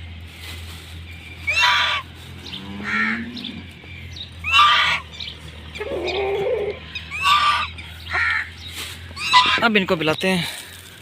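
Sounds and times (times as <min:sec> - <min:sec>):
harsh bird calls: 0:01.0 - 0:10.8
soft low bird call: 0:05.7 - 0:09.6.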